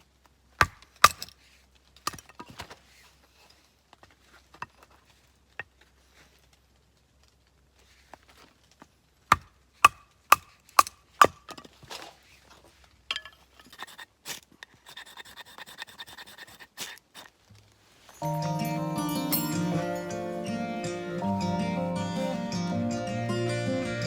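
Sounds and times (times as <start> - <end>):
rustling handling sounds: 11.6 - 18.2.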